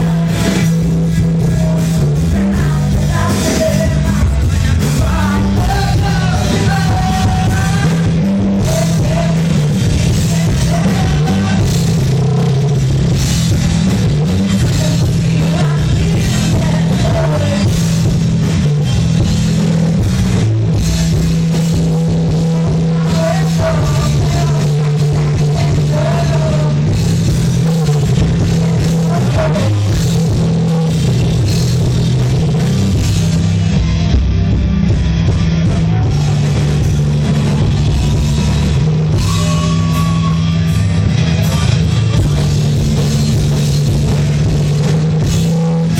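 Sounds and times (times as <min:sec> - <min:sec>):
bass line: 0:00.0 - 0:45.9
drum kit: 0:00.0 - 0:45.9
loud rock music: 0:00.0 - 0:45.9.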